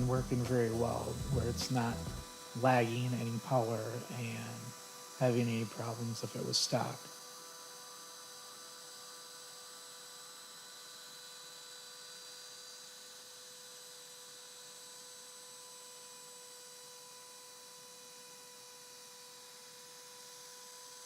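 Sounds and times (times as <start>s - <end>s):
high-pitched hum with hiss: 0.0s - 21.0s.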